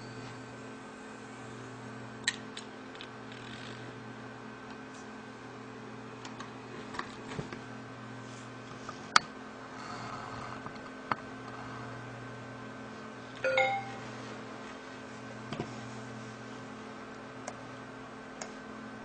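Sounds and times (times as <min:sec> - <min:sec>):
hard drive humming: 0:09.2 - 0:14.6
computer chime: 0:13.4 - 0:14.1.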